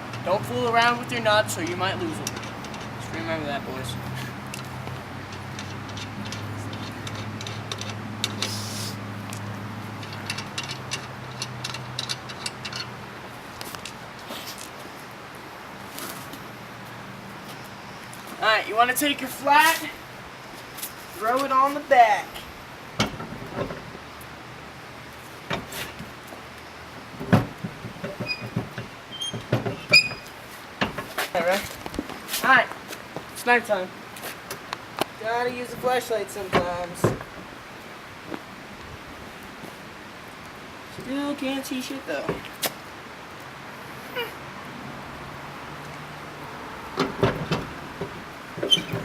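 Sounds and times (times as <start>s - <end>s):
wrench clinking on metal nuts: 10.0s - 13.0s
thumps of car tire being fitted: 27.2s - 31.3s, 47.0s - 49.0s.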